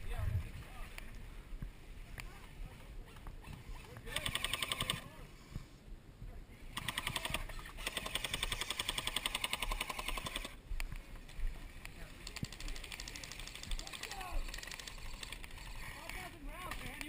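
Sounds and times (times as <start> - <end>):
airsoft gun firing bursts: 3.7 - 5.1, 6.8 - 10.6, 12.2 - 17.0.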